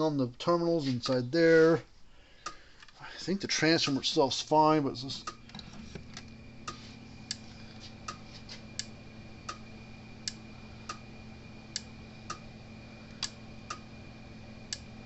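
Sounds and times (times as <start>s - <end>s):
steady low hum: 0.0s - 15.0s
electric fence energizer ticking: 3.5s - 15.0s.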